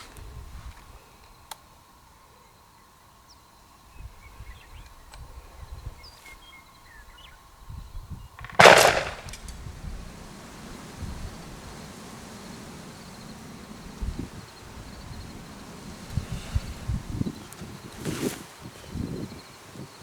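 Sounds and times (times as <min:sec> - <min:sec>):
shotgun shot: 0:08.4 - 0:09.4.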